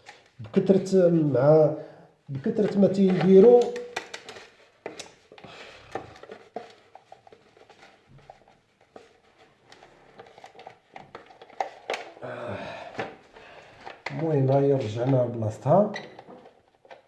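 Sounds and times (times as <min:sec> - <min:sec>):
plastic parts clicking and knocking: 0:02.4 - 0:12.2, 0:12.9 - 0:17.0.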